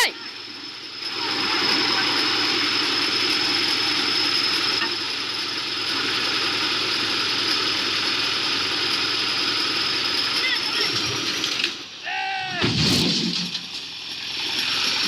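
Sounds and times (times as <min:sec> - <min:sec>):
heavy machinery clatter: 0:00.0 - 0:11.9, 0:12.6 - 0:15.0
high-pitched machine whine: 0:00.0 - 0:12.0.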